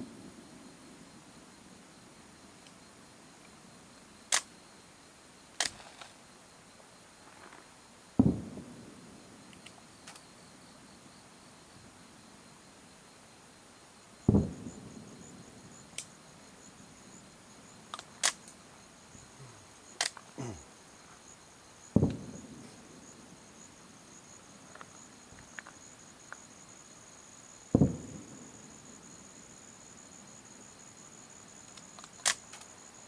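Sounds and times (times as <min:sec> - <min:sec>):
sharp firework cracks: 0:08.2 - 0:08.8, 0:14.3 - 0:15.2, 0:22.0 - 0:22.7, 0:27.7 - 0:28.4
firework shells booming: 0:08.2 - 0:09.1, 0:14.2 - 0:16.0, 0:21.9 - 0:23.0, 0:27.7 - 0:28.6.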